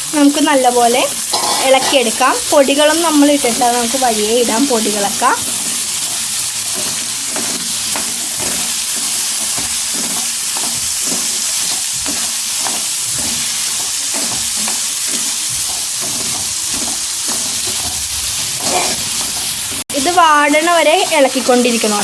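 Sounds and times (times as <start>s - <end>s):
food sizzling in oil: 0.0s - 22.0s
spoon scraping a pan: 1.2s - 19.8s.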